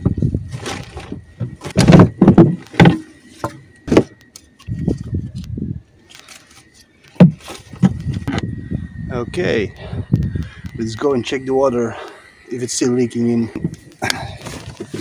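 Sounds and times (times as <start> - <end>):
sharp knocks and clattering: 1.4 - 4.2, 7.2 - 8.4
low rumbling: 7.7 - 15.0.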